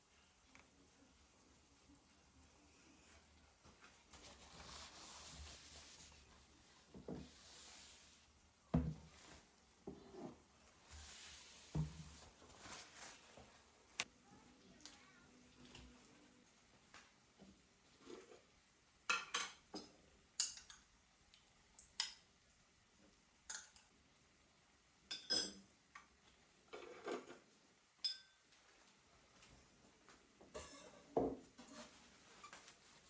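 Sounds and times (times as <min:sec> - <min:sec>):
dishes and cutlery clinking: 0:19.1 - 0:20.9, 0:25.1 - 0:25.7, 0:26.7 - 0:28.5, 0:30.5 - 0:32.8.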